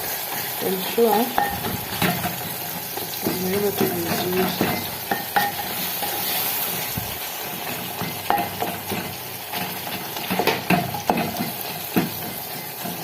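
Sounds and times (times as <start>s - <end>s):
vegetables sizzling in a pot: 0.0s - 13.0s
spoon knocking against pot: 1.4s - 6.2s, 7.7s - 13.0s.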